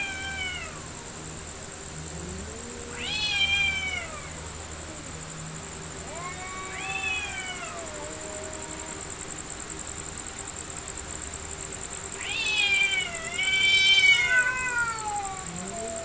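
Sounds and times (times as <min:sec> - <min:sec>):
cats yowling in a fight: 0:00.0 - 0:01.2, 0:02.0 - 0:09.4, 0:12.1 - 0:16.0.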